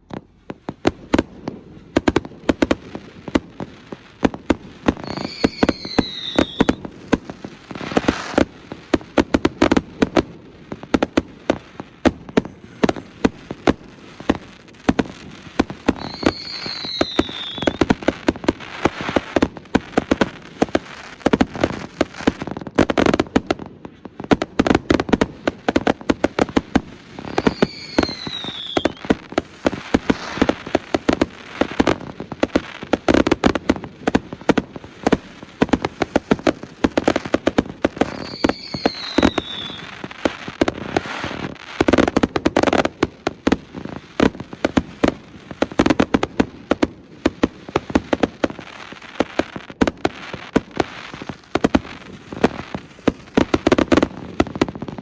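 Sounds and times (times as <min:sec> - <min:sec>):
firework bangs: 0:00.0 - 0:55.0
fireworks popping and crackling: 0:00.0 - 0:55.0
falling firework whistles: 0:04.9 - 0:07.1, 0:15.5 - 0:19.4, 0:27.2 - 0:30.8, 0:37.1 - 0:41.5.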